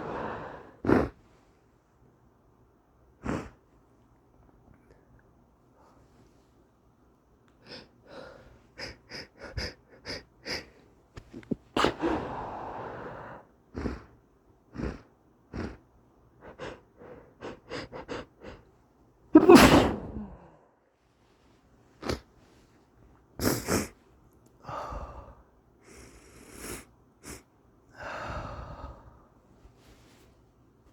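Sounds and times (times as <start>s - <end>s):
person breathing sharply: 0.0s - 1.1s, 11.8s - 13.5s
person sneezing: 11.4s - 12.4s, 19.4s - 20.6s, 23.4s - 24.0s.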